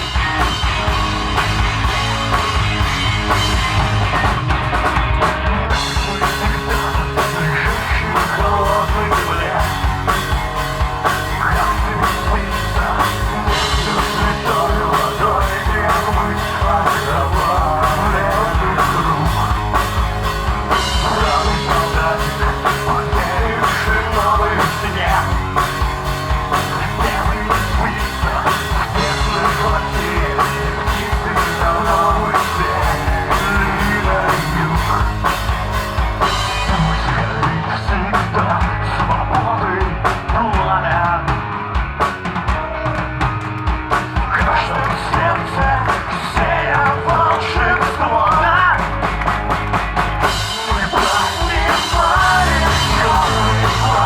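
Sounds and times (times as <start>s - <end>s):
live rock band playing: 0.0s - 54.0s
person singing: 5.7s - 20.0s, 20.7s - 35.5s, 44.2s - 49.1s, 50.2s - 54.0s.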